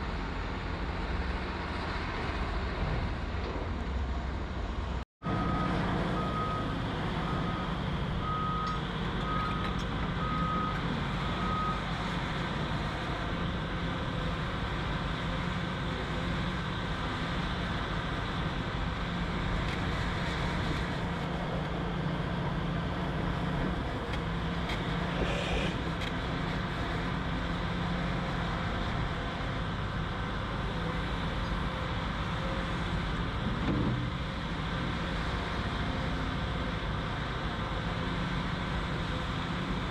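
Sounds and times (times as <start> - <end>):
heavy machine engine running: 0.0 - 39.9
reversing alarm beeps: 5.3 - 11.9.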